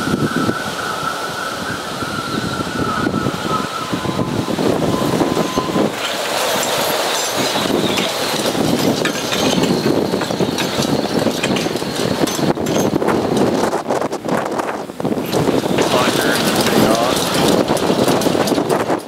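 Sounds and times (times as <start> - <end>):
strong wind buffeting microphone: 0.0 - 19.0
knocks and clatter: 5.5 - 19.0.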